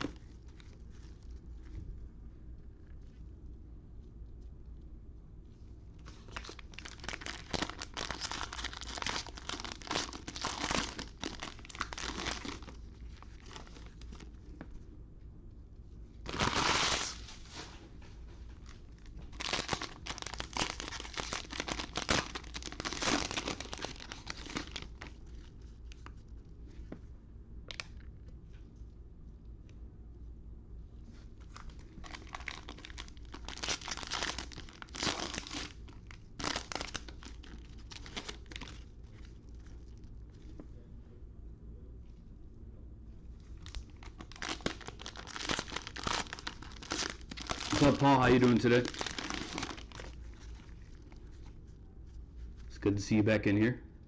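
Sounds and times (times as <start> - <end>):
plastic wrappers crinkling and tearing: 0.0 - 1.8, 6.0 - 14.4, 16.2 - 17.7, 18.5 - 26.2, 31.1 - 40.4, 43.5 - 51.6.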